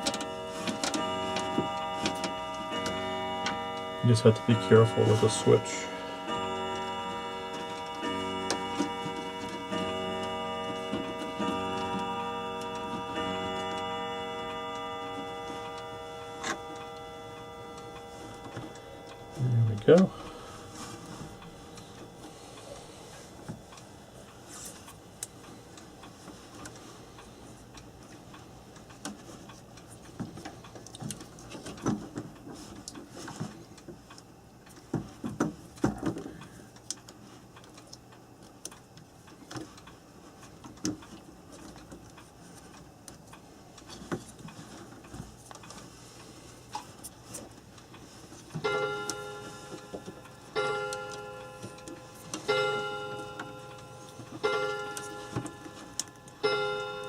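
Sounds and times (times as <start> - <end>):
small parts clicking and tapping: 0.0 - 3.8
faint steady hum: 0.0 - 57.0.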